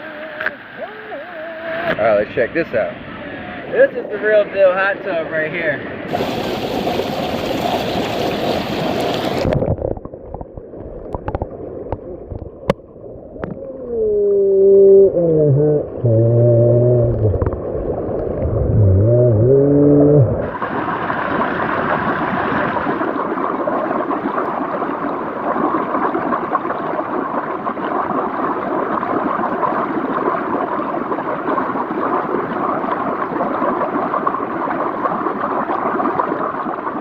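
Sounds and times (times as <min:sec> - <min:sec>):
hot tub jets bubbling: 0:03.8 - 0:09.7.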